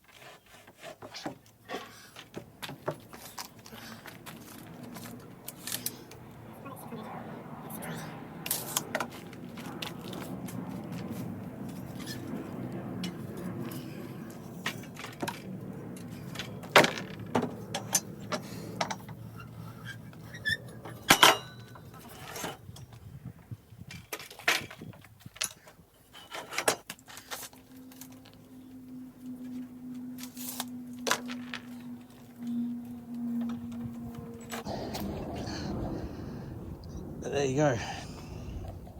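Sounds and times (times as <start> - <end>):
steady low hum: 27.5 - 38.9.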